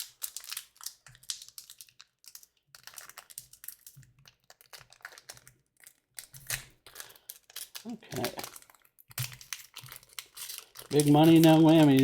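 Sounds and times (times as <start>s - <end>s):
card pack wrapper crinkling: 0.0s - 12.0s
cards being handled: 9.2s - 12.0s.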